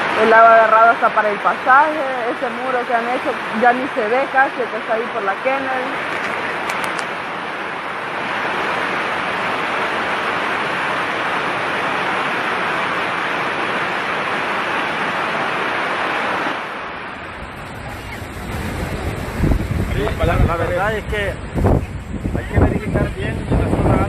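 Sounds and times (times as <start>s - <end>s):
rushing water: 0.0s - 24.0s
wind rumble on microphone: 5.7s - 24.0s.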